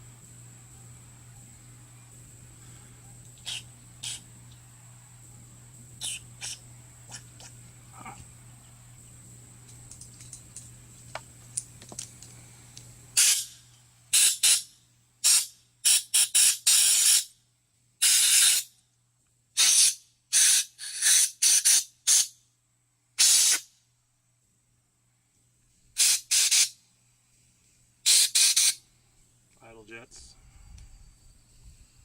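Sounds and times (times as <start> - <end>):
faint hum: 0.0 - 16.2, 21.8 - 32.0
compressed air hissing: 2.2 - 4.4, 6.0 - 7.5, 13.2 - 17.3, 18.0 - 18.7, 19.6 - 22.4, 23.2 - 23.7, 26.0 - 26.8, 28.0 - 28.9.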